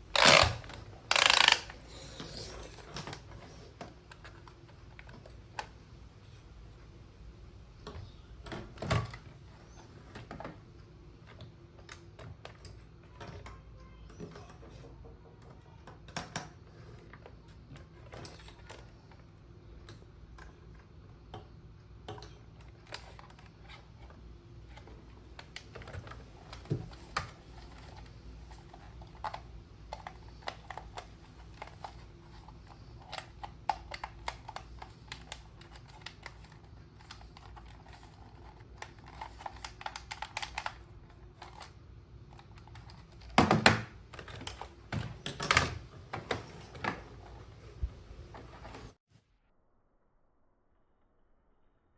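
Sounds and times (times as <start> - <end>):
hard plastic clicks and taps: 38.8 - 40.8
plastic knocks and clatters: 42.9 - 47.4.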